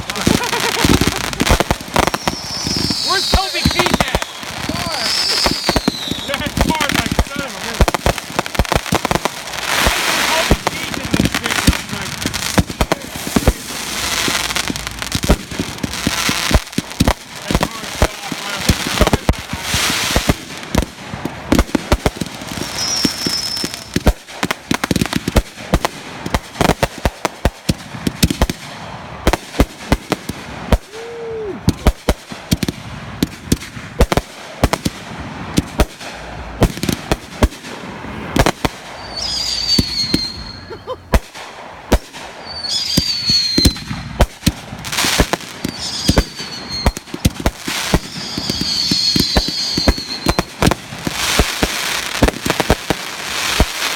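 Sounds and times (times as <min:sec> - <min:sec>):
fireworks cracking and banging: 0:00.0 - 0:53.9
falling firework whistles: 0:00.2 - 0:07.8, 0:22.5 - 0:24.2, 0:37.6 - 0:53.9.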